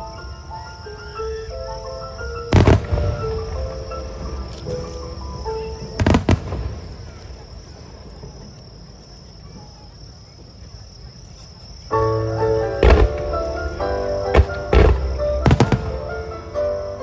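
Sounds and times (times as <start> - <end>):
background music: 0.0 - 6.7, 11.9 - 17.0.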